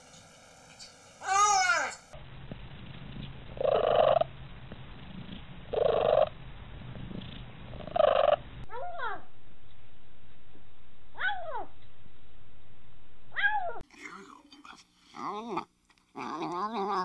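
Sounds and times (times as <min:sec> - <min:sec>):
cat purring: 0:03.1 - 0:06.3, 0:06.9 - 0:08.5.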